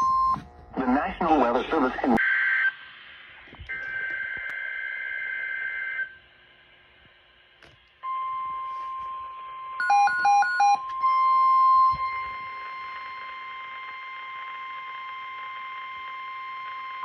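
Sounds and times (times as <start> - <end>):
steady alarm tone: 8.0 - 15.3.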